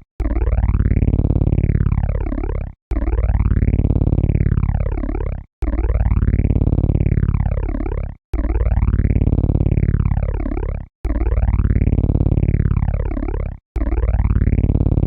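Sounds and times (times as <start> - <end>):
synthesized helicopter rotor: 0.0 - 15.0.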